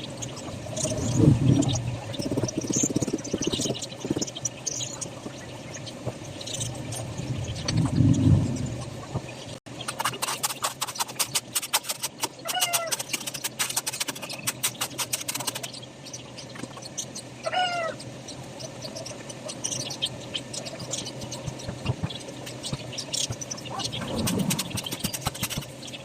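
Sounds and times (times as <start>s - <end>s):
animal wavering cry: 12.4s - 13.0s, 17.4s - 18.0s.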